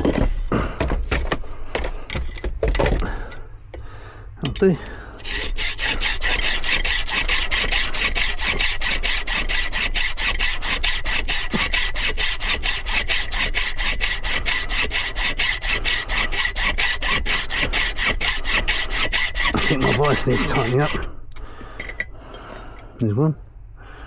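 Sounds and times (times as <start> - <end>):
hand saw cutting metal: 4.4 - 21.2.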